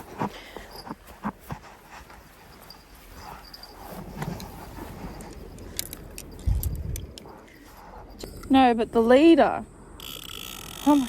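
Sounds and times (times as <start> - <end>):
fishing gear clicks and clinks: 0.0 - 8.6.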